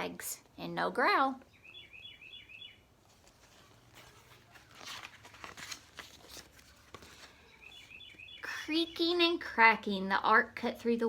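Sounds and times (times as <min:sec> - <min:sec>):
small bird chirping: 0:01.5 - 0:02.8, 0:07.4 - 0:09.0
book pages rustling: 0:02.9 - 0:08.4.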